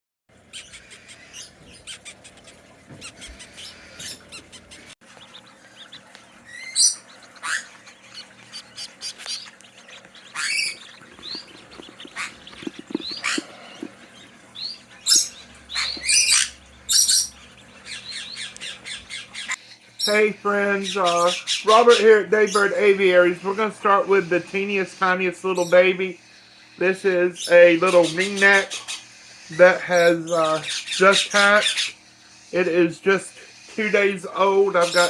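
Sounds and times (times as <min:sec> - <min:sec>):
steady low hum: 0:00.3 - 0:34.9
parrots chirping and squawking: 0:00.3 - 0:35.0.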